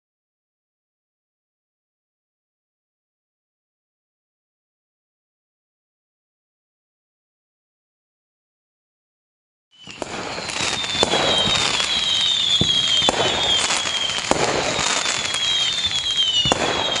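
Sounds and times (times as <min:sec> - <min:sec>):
fireworks whistling: 0:09.7 - 0:17.0
fireworks bangs: 0:09.8 - 0:17.0.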